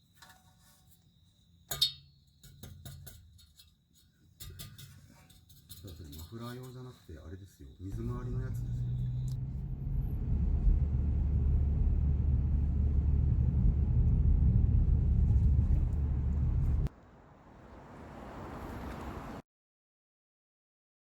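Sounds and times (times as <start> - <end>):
car engine rumble: 7.8 - 19.4.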